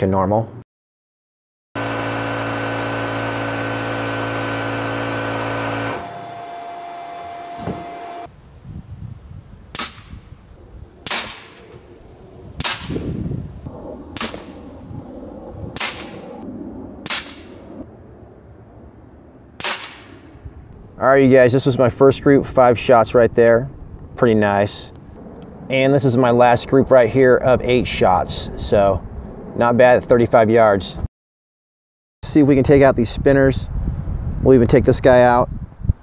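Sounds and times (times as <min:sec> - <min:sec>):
steady machine drone: 0:01.8 - 0:08.3
air rifle shots: 0:09.7 - 0:10.2, 0:11.0 - 0:11.9, 0:12.6 - 0:13.2, 0:14.1 - 0:14.8, 0:15.7 - 0:17.6, 0:19.6 - 0:20.3.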